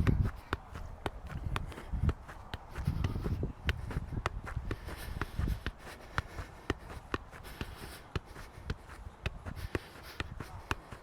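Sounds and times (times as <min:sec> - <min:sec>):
wind rumble on microphone: 0:00.0 - 0:07.6.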